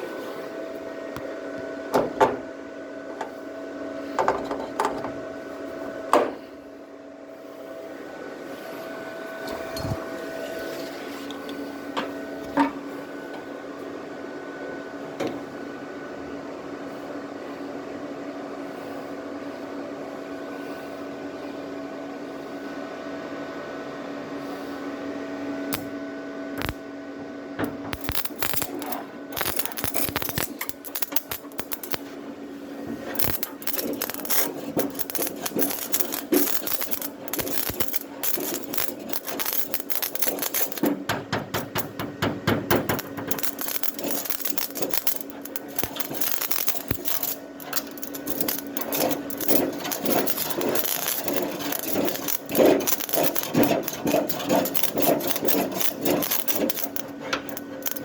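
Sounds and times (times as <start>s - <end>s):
welding machine humming: 26.6s - 26.8s, 27.6s - 32.2s, 33.0s - 58.0s
crackling electrode clicks: 27.9s - 28.6s, 29.4s - 30.5s.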